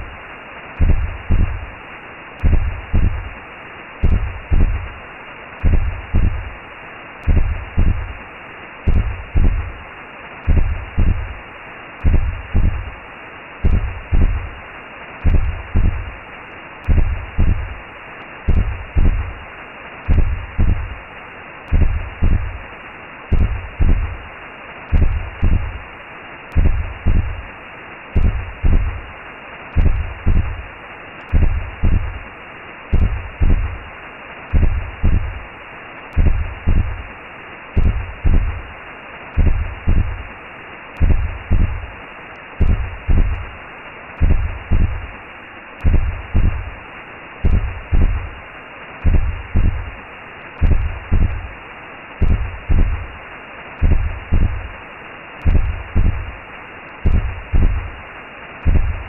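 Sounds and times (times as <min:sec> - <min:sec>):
muffled whooshing hiss: 0:00.0 - 0:59.0
slow heartbeat thumps: 0:00.8 - 0:01.7, 0:02.4 - 0:03.4, 0:04.0 - 0:05.0, 0:05.6 - 0:06.6, 0:07.2 - 0:08.2, 0:08.8 - 0:09.8, 0:10.4 - 0:11.4, 0:12.0 - 0:13.0, 0:13.6 - 0:14.6, 0:15.2 - 0:16.2, 0:16.8 - 0:17.8, 0:18.4 - 0:19.4, 0:20.1 - 0:21.0, 0:21.7 - 0:22.6, 0:23.3 - 0:24.3, 0:24.9 - 0:25.9, 0:26.5 - 0:27.5, 0:28.2 - 0:29.1, 0:29.7 - 0:30.7, 0:31.3 - 0:32.2, 0:32.9 - 0:33.9, 0:34.5 - 0:35.5, 0:36.1 - 0:37.1, 0:37.8 - 0:38.7, 0:39.4 - 0:40.3, 0:41.0 - 0:42.0, 0:42.6 - 0:43.6, 0:44.2 - 0:45.2, 0:45.8 - 0:46.8, 0:47.4 - 0:48.4, 0:49.0 - 0:50.0, 0:50.6 - 0:51.6, 0:52.2 - 0:53.2, 0:53.8 - 0:54.8, 0:55.4 - 0:56.4, 0:57.0 - 0:58.0, 0:58.6 - 0:59.0.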